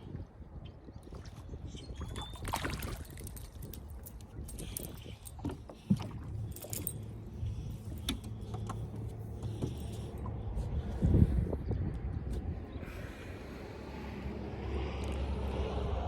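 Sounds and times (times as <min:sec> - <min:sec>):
fishing gear clicking and rattling: 0:02.1 - 0:10.8.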